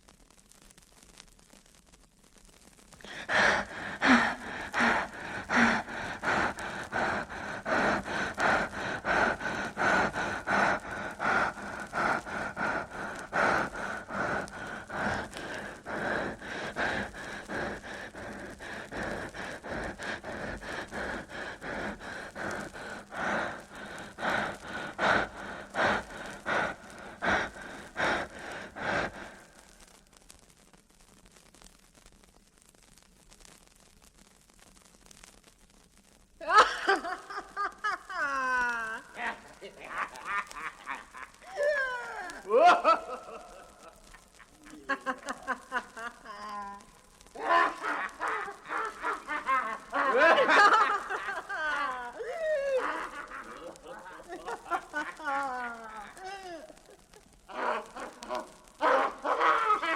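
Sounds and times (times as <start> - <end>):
rhythmic gasping pulses: 3.0 - 29.9.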